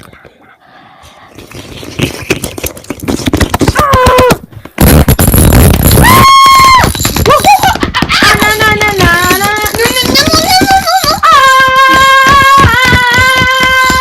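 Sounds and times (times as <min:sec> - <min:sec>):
sharp bangs and crackles: 0:04.7 - 0:06.3.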